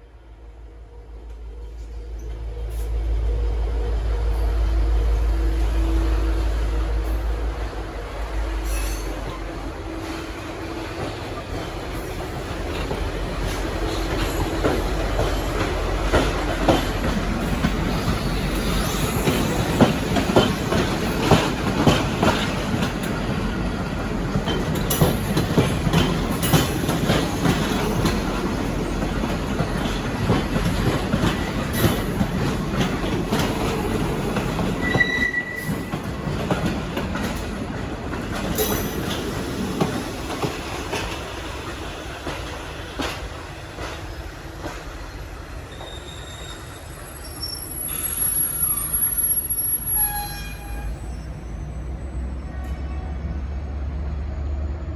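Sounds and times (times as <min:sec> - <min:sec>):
train rumbling along track: 0:00.0 - 0:54.9
wheels clattering over rail joints: 0:11.0 - 0:44.9
high wheel squeal: 0:34.8 - 0:36.0, 0:45.7 - 0:52.8.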